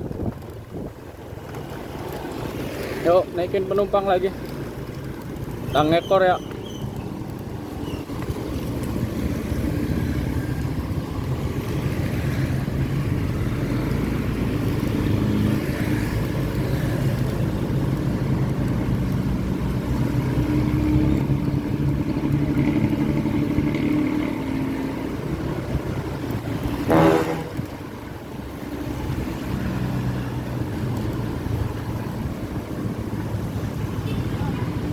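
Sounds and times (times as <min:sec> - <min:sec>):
bus diesel engine running: 0:16.2 - 0:32.0.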